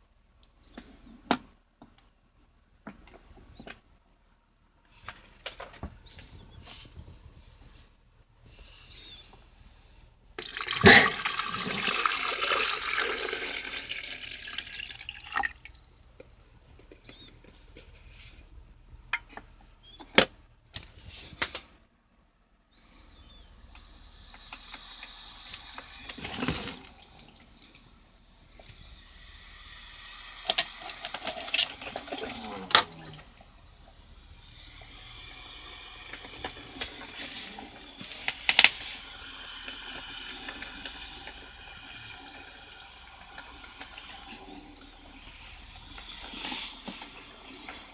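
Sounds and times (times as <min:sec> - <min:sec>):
water running: 0:10.4 - 0:18.0, 0:23.7 - 0:47.9.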